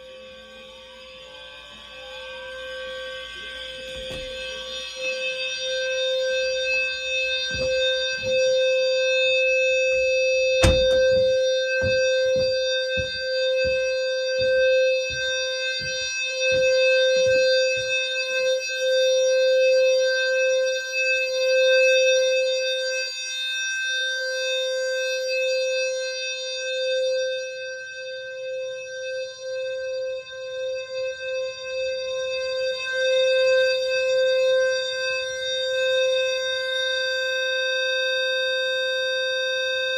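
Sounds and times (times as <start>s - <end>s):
fire alarm horn buzzing: 0.0s - 39.9s
low thumps: 10.6s - 18.0s.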